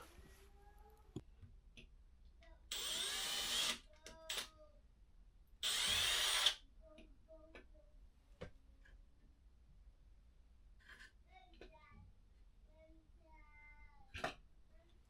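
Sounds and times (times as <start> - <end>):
cordless drill running: 2.7 - 4.4, 5.6 - 6.6.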